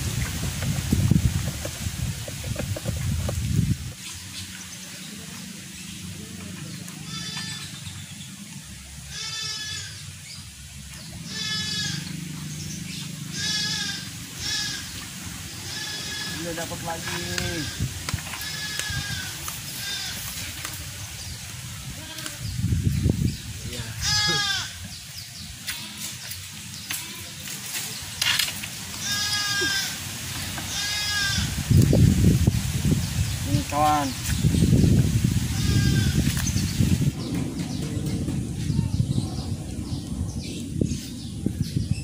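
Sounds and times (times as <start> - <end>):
animal bleating: 7.0 - 7.8, 9.1 - 10.0, 11.2 - 12.2, 13.3 - 15.0, 15.6 - 21.0, 21.9 - 22.5, 23.8 - 24.8, 25.6 - 27.5, 29.0 - 30.0, 30.7 - 31.6, 35.5 - 36.3.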